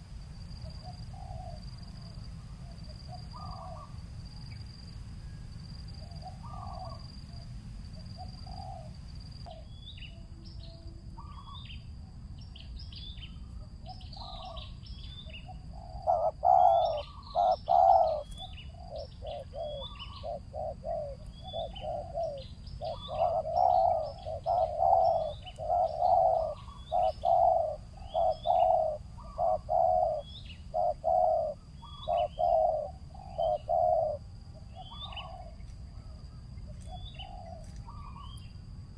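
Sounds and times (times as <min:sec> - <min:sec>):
dove cooing: 0:00.6 - 0:01.7, 0:03.0 - 0:04.0, 0:06.0 - 0:07.1, 0:08.2 - 0:09.6, 0:11.2 - 0:11.6, 0:13.9 - 0:38.4
small birds chirping: 0:02.8 - 0:04.6, 0:06.1 - 0:38.6.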